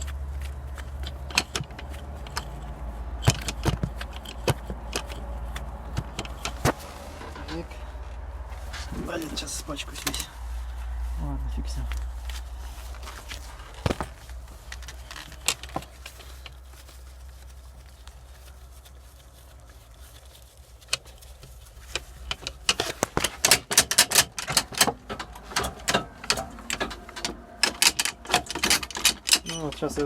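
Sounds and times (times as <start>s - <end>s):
metallic clicks and knocks: 0.0s - 7.6s, 21.9s - 30.0s.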